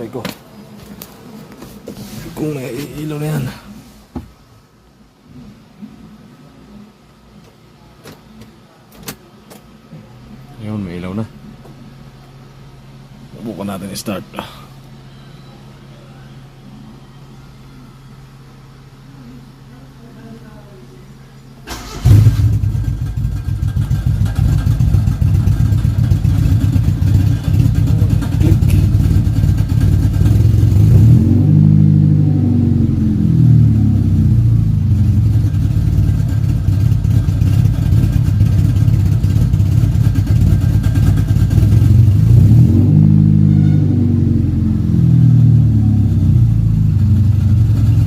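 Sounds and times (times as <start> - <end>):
vehicle engine starting and revving: 21.7 - 48.0.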